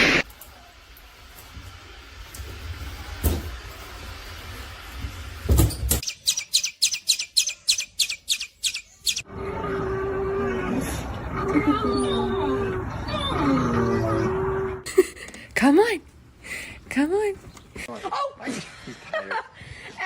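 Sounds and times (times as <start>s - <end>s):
short high bird chirps: 6.0s - 9.2s.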